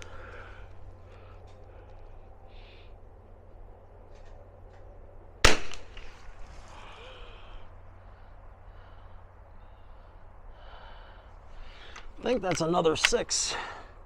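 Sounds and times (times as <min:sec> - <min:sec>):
rifle shot with echo: 0:05.4 - 0:06.4.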